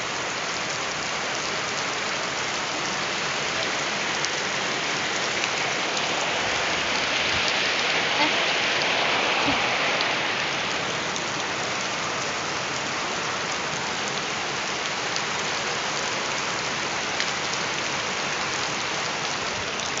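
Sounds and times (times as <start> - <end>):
rain falling: 0.0 - 20.0.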